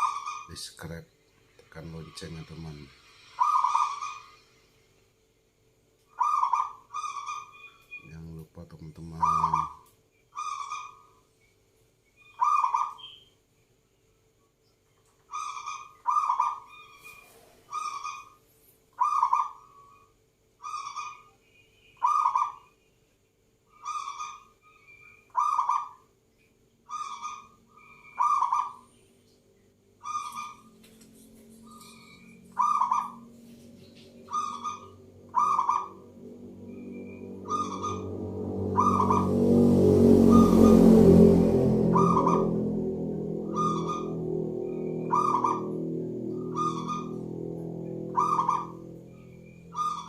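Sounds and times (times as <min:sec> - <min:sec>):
low noise: 0:00.0 - 0:10.3, 0:26.1 - 0:50.0
dove cooing: 0:06.2 - 0:07.5, 0:19.0 - 0:19.7, 0:31.7 - 0:33.2, 0:34.2 - 0:38.1, 0:38.7 - 0:39.6, 0:43.4 - 0:47.3, 0:48.0 - 0:48.9, 0:49.7 - 0:50.0.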